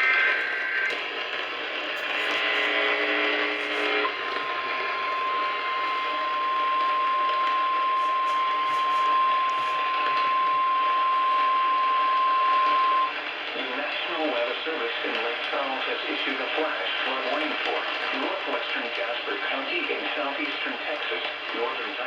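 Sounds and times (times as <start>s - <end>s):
radio hiss: 0.0s - 22.0s
steady single-note alarm tone: 2.0s - 13.2s.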